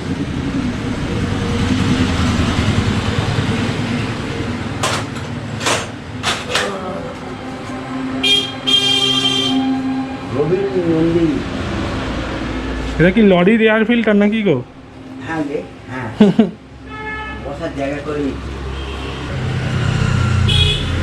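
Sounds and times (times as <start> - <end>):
traffic engine rumble: 0.0 - 21.0
sharp knocks: 4.8 - 6.8
vehicle horn honking: 8.0 - 10.2, 16.8 - 17.5, 18.7 - 19.3, 20.5 - 21.0.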